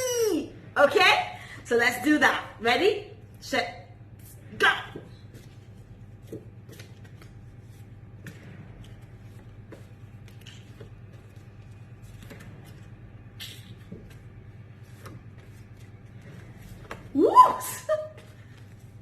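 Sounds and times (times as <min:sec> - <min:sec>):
flashcards tapping and rustling: 0:05.0 - 0:17.1.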